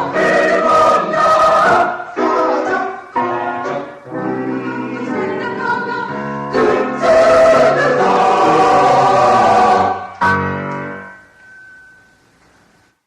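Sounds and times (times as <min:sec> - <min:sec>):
mixed choir singing: 0:00.0 - 0:10.2.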